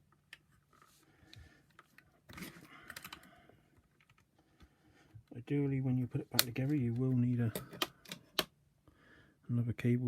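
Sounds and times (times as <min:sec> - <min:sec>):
plastic parts clicking and rattling: 0:00.1 - 0:04.3, 0:06.4 - 0:08.5.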